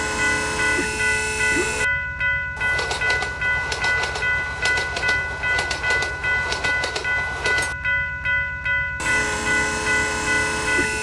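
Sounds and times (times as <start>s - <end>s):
railroad crossing alarm clanging: 0.0s - 11.0s
train rumbling: 0.0s - 11.0s
train wheels clicking: 2.6s - 7.8s.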